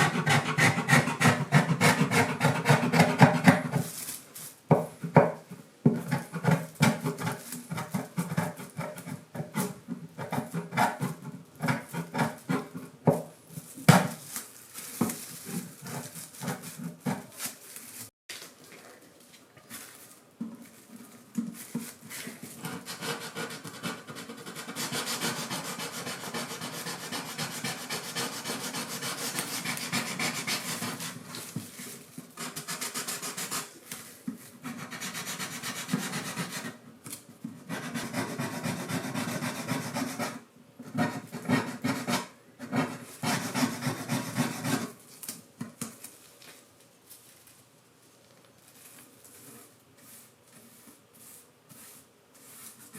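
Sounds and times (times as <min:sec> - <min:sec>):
wood being sanded by hand: 0:00.0 - 0:03.6, 0:22.6 - 0:31.2.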